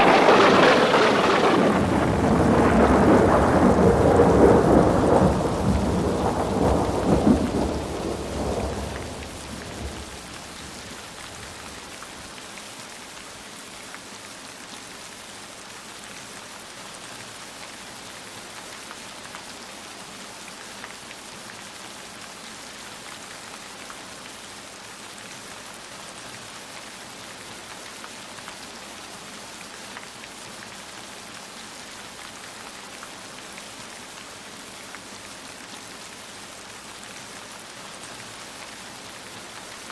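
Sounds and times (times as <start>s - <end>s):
thunder rumble: 0.0s - 12.1s
heavy rain downpour: 0.0s - 39.9s.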